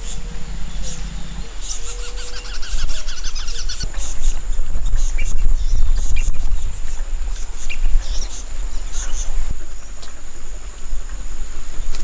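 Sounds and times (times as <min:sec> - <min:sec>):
loud low rumble: 0:00.0 - 0:03.9
high-pitched insect drone: 0:00.0 - 0:04.3
bird chirping: 0:00.0 - 0:09.4.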